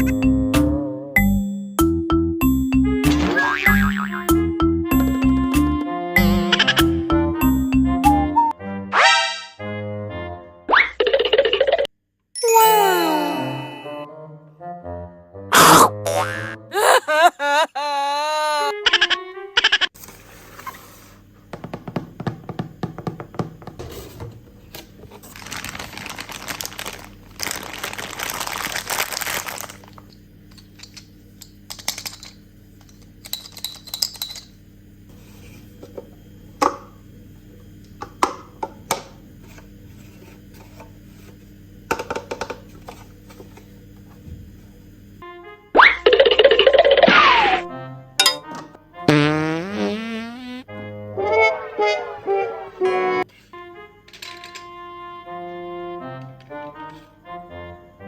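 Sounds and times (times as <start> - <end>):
steady low hum: 34.3 - 45.2.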